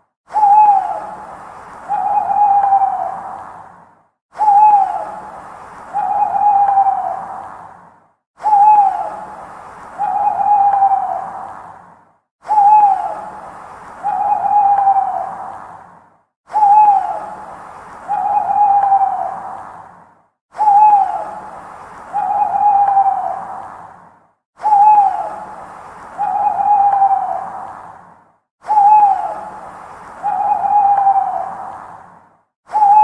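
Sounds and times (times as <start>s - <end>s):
owl hooting: 0.3s - 3.5s, 4.4s - 7.5s, 8.4s - 11.5s, 12.5s - 15.6s, 16.5s - 19.6s, 20.6s - 23.7s, 24.6s - 27.7s, 28.6s - 32.0s, 32.7s - 33.0s.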